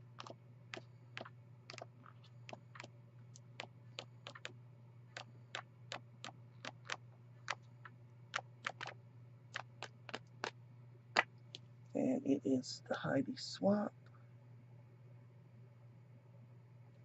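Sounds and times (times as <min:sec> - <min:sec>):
steady low hum: 0:00.0 - 0:17.0
paper pad clicks and ticks: 0:00.2 - 0:04.5, 0:05.2 - 0:07.7, 0:08.4 - 0:09.0, 0:09.6 - 0:10.5.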